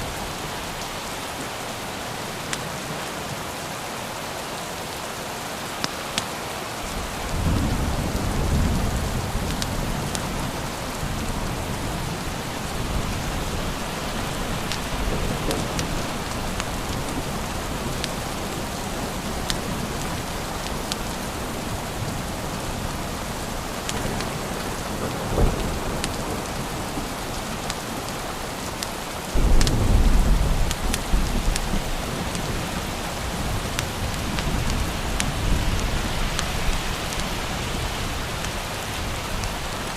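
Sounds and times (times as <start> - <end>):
rain falling: 0.0 - 39.9
thunder rolling: 6.9 - 18.6, 29.4 - 36.8.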